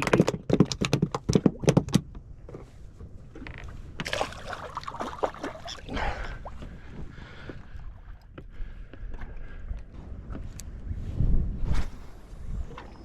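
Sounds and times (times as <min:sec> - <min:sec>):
water splashing around boat: 0:00.0 - 0:09.1.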